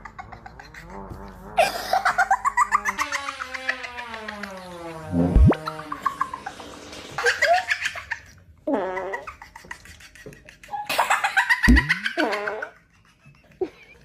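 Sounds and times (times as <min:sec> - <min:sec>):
fart sound effect: 0:04.2 - 0:05.8, 0:11.7 - 0:12.5
person laughing: 0:11.6 - 0:14.0.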